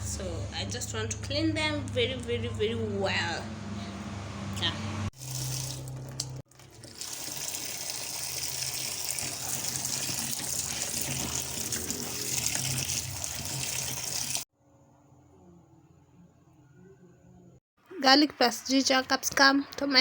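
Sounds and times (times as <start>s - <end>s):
water running: 5.2s - 14.5s.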